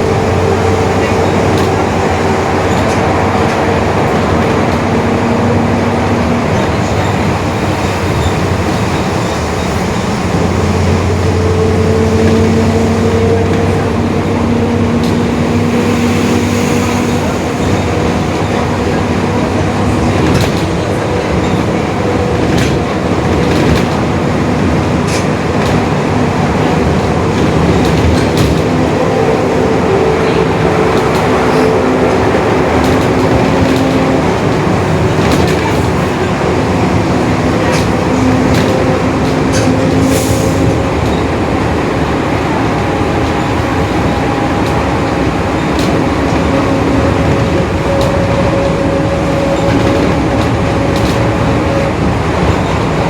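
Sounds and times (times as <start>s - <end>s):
bus drivetrain and road rumble: 0.0s - 53.0s.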